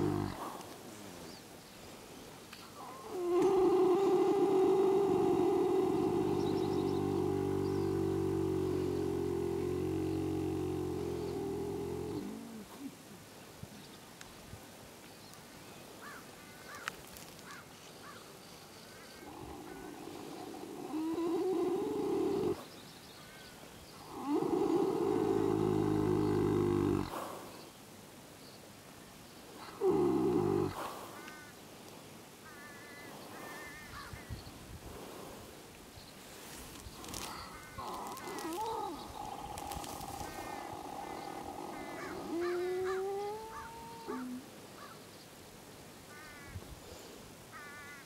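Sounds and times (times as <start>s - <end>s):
horse snoring: 0.0s - 1.3s, 2.8s - 12.8s, 19.2s - 22.6s, 24.0s - 27.4s, 29.6s - 31.0s, 37.0s - 44.4s.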